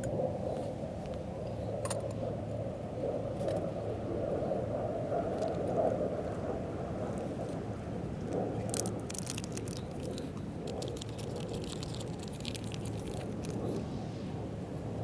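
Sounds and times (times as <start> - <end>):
crackling rustling clicks: 8.3 - 13.8.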